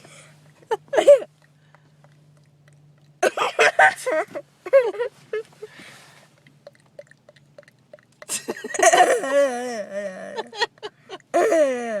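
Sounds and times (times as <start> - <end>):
wet tongue clicks: 1.2 - 3.2, 6.3 - 8.6.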